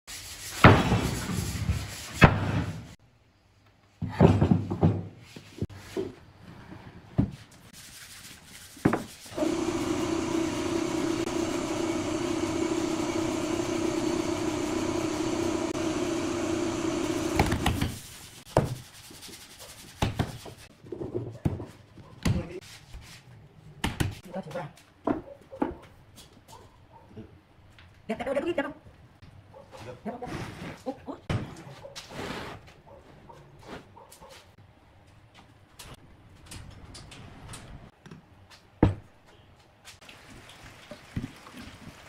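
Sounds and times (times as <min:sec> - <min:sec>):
power tool motor running: 0:09.3 - 0:17.9
wood and tools knocking: 0:15.0 - 0:18.0.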